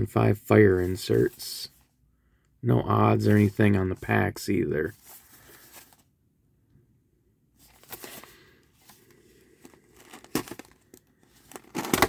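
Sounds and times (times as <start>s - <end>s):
box rustling and crinkling: 7.6s - 12.0s.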